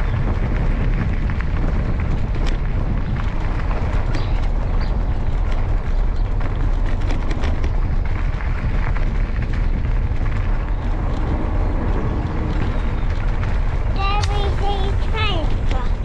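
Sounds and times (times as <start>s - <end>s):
bike clicks and rattles: 0.0s - 16.0s
wind rumble on microphone: 0.0s - 16.0s.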